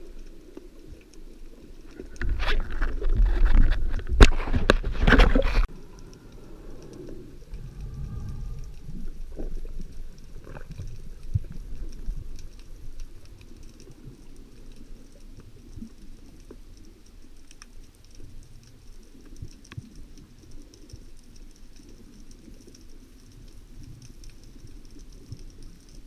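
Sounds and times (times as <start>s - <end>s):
low underwater rumble: 0.0s - 17.3s
faint clicks: 0.0s - 26.0s.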